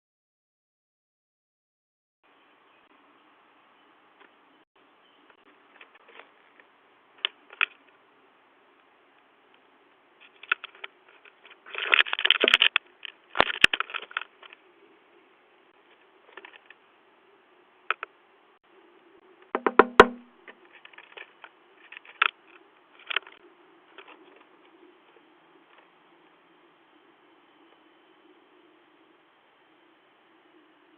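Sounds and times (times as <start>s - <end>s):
woodpecker pecking on doorbell: 19.6s - 20.3s.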